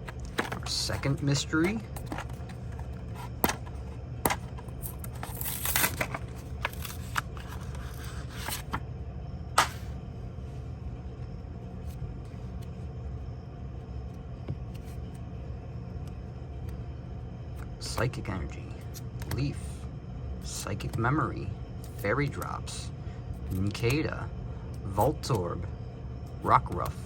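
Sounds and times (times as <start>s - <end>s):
steady low hum: 0.0s - 27.0s
foil wrapper tearing: 4.9s - 7.4s.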